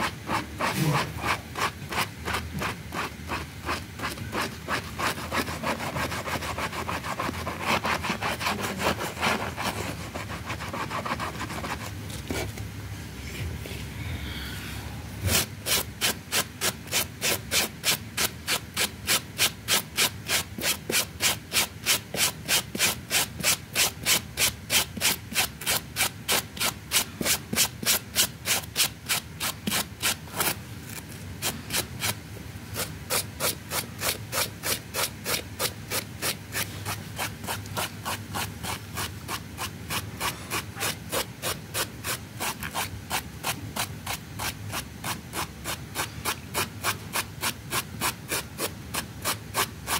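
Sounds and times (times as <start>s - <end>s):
brush scrubbing wet rug: 0.0s - 12.3s, 15.2s - 30.6s, 32.8s - 49.9s.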